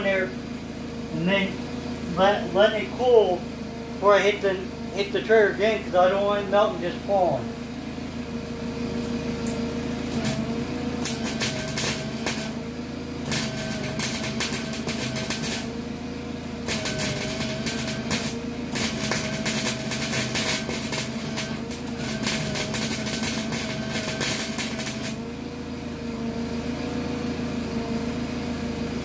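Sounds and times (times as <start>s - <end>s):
steady hum: 0.0s - 26.4s
welder arc crackling: 9.0s - 15.8s, 16.6s - 25.2s.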